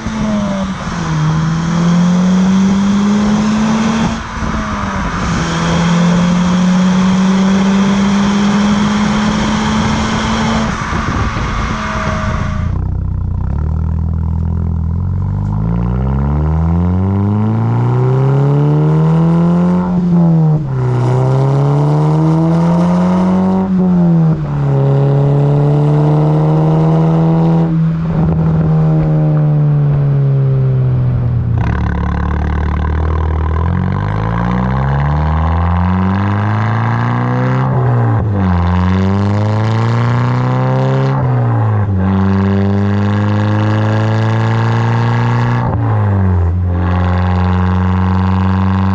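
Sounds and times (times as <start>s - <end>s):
car engine accelerating: 0.0s - 48.9s.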